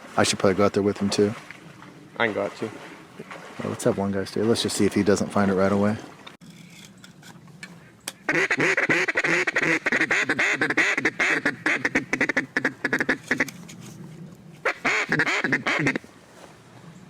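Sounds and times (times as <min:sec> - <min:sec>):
duck call quacks: 0:08.2 - 0:13.5, 0:14.6 - 0:16.0.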